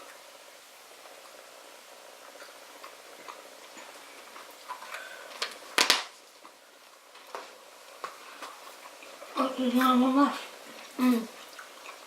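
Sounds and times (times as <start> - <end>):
plastic clatter: 5.4 - 6.1.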